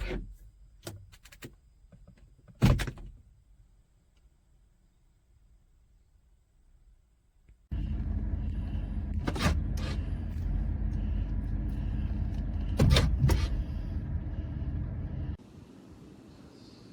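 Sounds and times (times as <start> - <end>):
vehicle engine rumble: 7.7 - 16.0.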